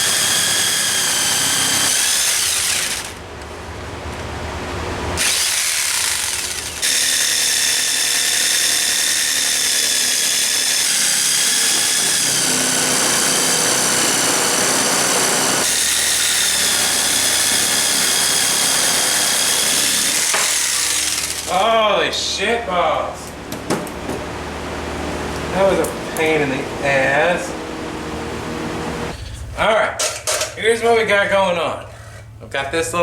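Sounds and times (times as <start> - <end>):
angle grinder cutting steel: 0.0 - 3.2, 5.2 - 21.7.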